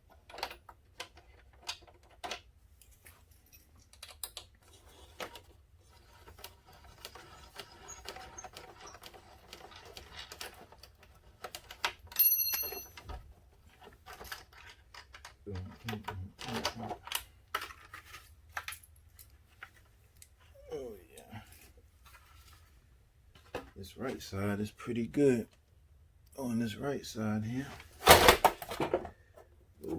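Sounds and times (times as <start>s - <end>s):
hand tools and fasteners clattering: 0.0s - 20.5s.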